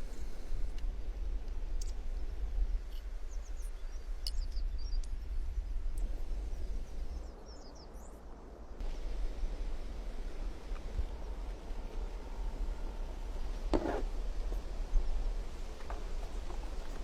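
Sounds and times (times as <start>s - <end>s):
steady low rumble: 0.0s - 17.0s
small birds chirping: 2.8s - 5.7s.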